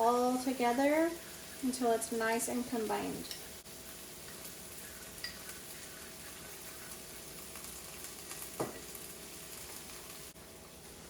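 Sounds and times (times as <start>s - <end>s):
chicken sizzling in a frying pan: 0.0s - 11.0s
spoon stirring sauce in a bowl: 4.3s - 8.9s.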